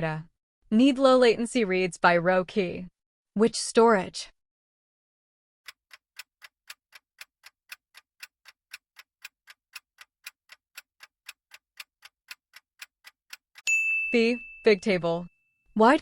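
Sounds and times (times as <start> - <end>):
clock ticking: 5.7 - 13.6.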